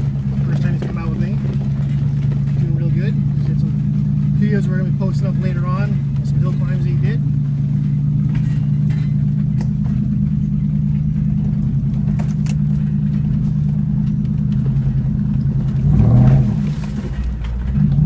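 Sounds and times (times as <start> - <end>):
vehicle engine running: 0.0 - 18.0
light rattling clicks: 11.0 - 15.8.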